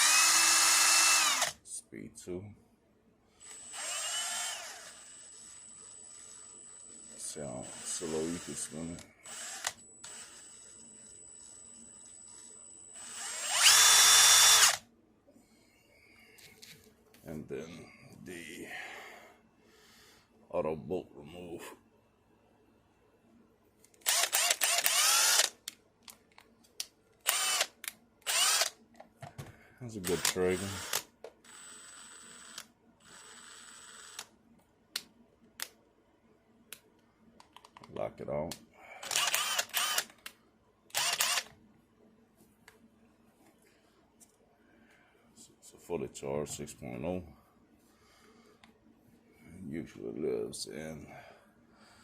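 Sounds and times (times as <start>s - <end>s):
impact wrench motor whining: 0.0s - 1.6s, 3.4s - 14.8s, 24.0s - 25.6s, 27.2s - 28.8s, 30.1s - 34.3s, 39.0s - 40.2s, 40.9s - 41.5s.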